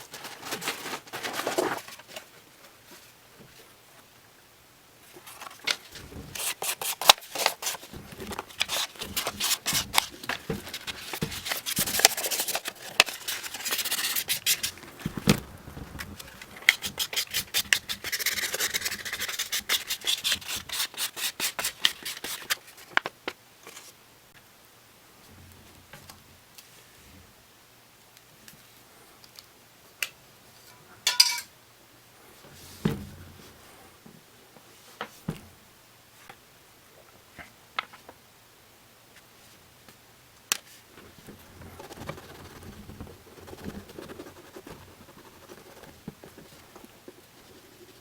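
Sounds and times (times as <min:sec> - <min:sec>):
rubbing strokes on a shoe: 0:41.4 - 0:48.0.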